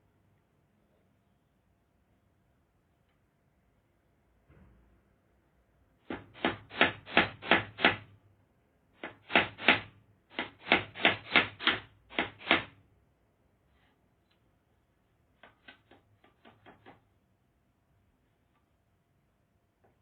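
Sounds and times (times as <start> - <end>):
hammer driving nails: 6.0 - 8.1, 9.0 - 12.8.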